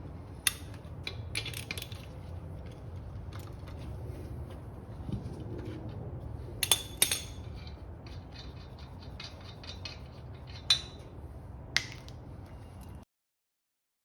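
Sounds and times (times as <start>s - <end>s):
metal tools clinking: 0.4s - 2.8s, 6.6s - 11.1s.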